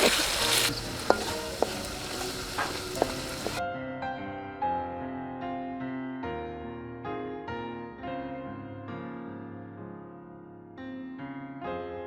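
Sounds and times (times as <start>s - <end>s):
curry sizzling in a pot: 0.0s - 3.6s
spoon knocking against pot: 0.0s - 3.6s
soft piano music: 0.0s - 12.0s.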